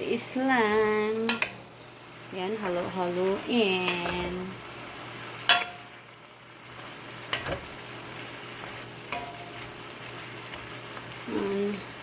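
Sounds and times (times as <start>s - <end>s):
beans sizzling in a pan: 0.0s - 12.0s
metal utensil clinking against pan: 5.5s - 5.9s, 9.1s - 9.6s.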